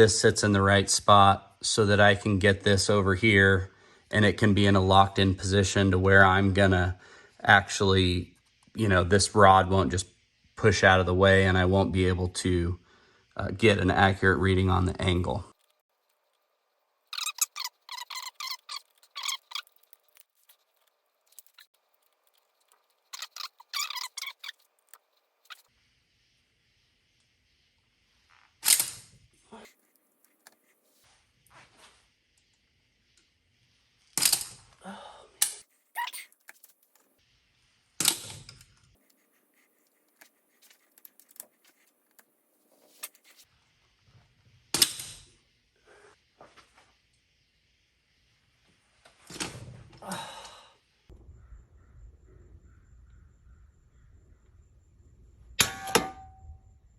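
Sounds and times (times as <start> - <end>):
sharp metal clank: 55.6 - 56.6.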